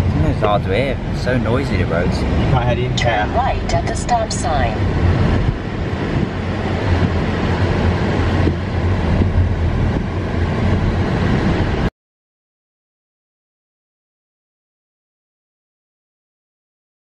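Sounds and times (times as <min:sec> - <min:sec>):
low drone: 0:00.0 - 0:07.0
tyre roar inside moving car: 0:00.0 - 0:11.9.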